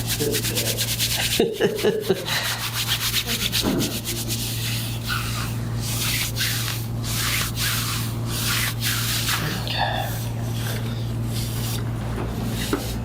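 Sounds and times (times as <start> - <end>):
rubbing or swishing strokes: 2.4 - 10.3.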